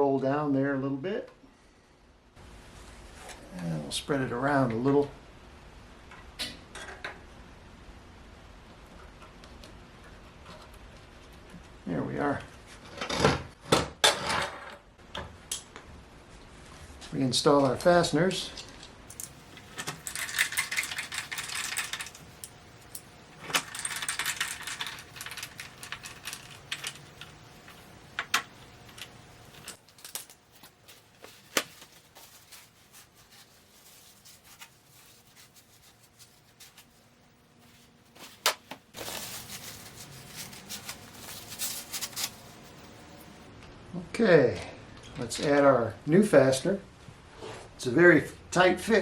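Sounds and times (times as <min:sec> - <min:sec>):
metal fasteners clinking: 0:19.1 - 0:37.0.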